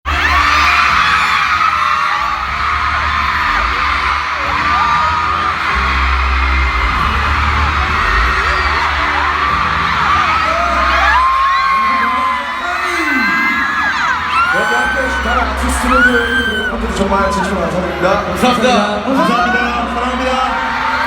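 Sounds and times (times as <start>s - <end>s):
loud music with heavy bass: 0.1s - 11.7s
crowd screaming: 0.1s - 21.0s.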